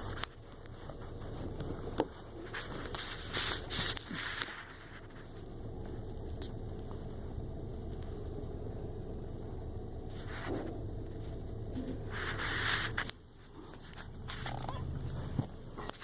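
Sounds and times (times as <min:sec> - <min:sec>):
plastic rustling and scraping: 0:00.0 - 0:06.9, 0:10.1 - 0:16.0
low hum: 0:00.0 - 0:16.0.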